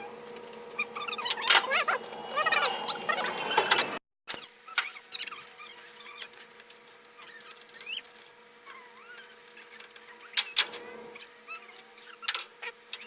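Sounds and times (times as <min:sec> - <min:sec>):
dogs whining: 0:00.6 - 0:04.0.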